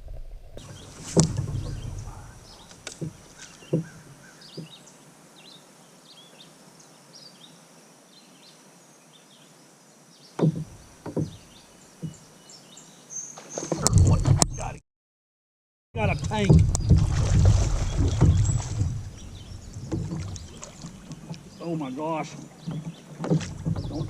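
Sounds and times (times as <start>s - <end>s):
knocks on kayak hull: 0.6s - 4.8s, 10.4s - 11.4s, 12.0s - 12.2s, 16.2s - 21.6s, 22.6s - 24.0s.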